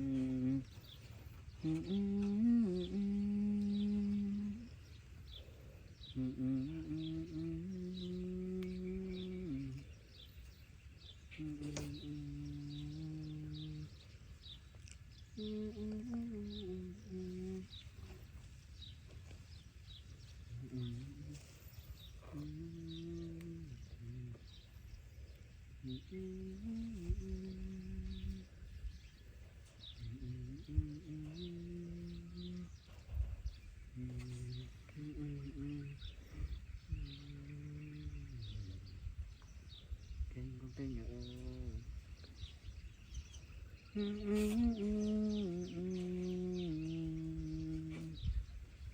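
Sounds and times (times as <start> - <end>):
low cooing calls: 0.0 - 48.9
low humming tune: 0.0 - 48.9
small birds chirping: 0.0 - 48.9.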